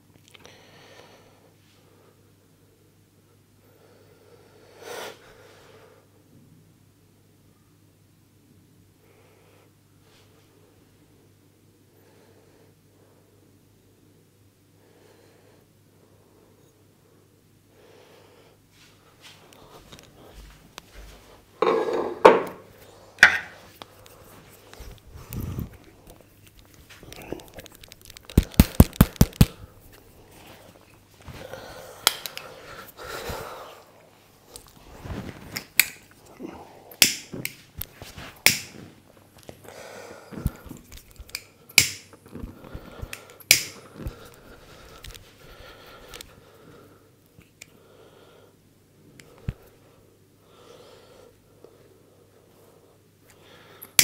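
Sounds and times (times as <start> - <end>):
hands rubbing head: 23.4 - 31.5, 37.5 - 39.0
hands slapping during massage: 27.6 - 29.6
sharp clicks: 27.6 - 29.6.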